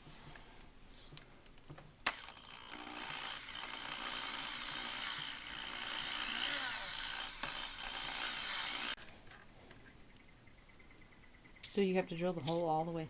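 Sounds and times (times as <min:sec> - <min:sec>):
electric drill boring into steel: 0:02.1 - 0:09.0.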